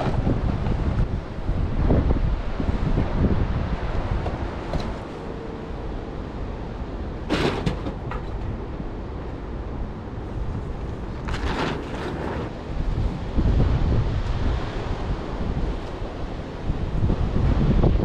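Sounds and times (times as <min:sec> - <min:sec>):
wind buffeting microphone: 0:00.0 - 0:18.0
knocking and rustling: 0:07.3 - 0:08.5.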